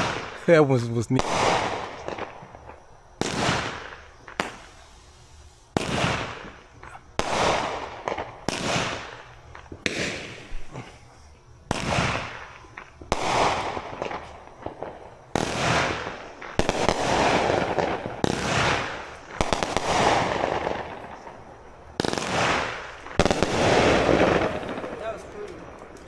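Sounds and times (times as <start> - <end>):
fireworks bangs: 0.0 - 26.0
fireworks crackle: 0.0 - 26.0.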